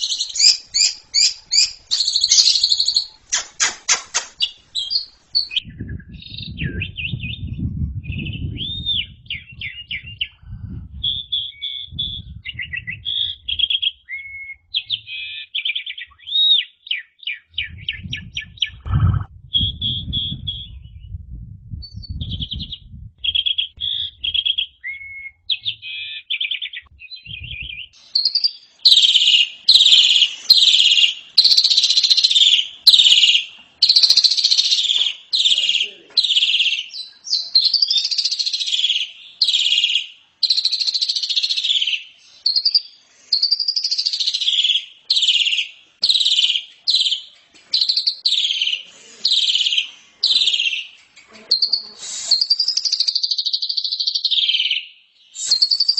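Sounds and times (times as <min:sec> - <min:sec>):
starling singing harsh chattering: 0:00.0 - 0:06.6, 0:47.8 - 0:53.2.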